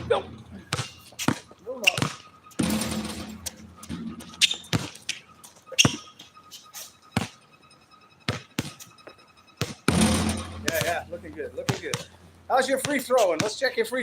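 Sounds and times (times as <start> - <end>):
basketball bouncing: 0.6 - 5.2, 7.2 - 7.4, 8.3 - 8.8, 9.6 - 11.0, 11.6 - 12.1, 12.8 - 13.6.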